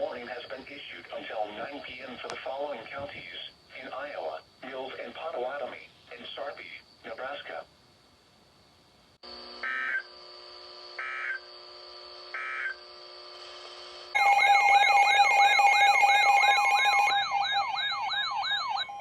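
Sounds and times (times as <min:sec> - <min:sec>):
faint steady hum: 0:00.0 - 0:17.1
steady alarm tone: 0:14.2 - 0:19.0
warbling electronic alert alarm: 0:14.2 - 0:19.0.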